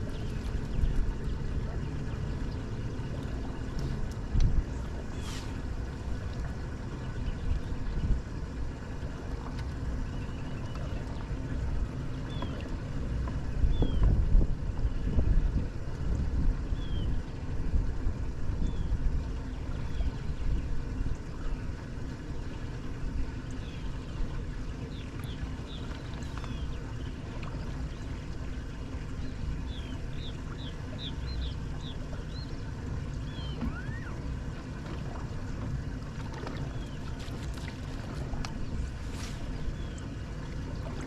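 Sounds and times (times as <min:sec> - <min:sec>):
water lapping on boat: 0:00.0 - 0:41.0
wind buffeting microphone: 0:11.0 - 0:21.5.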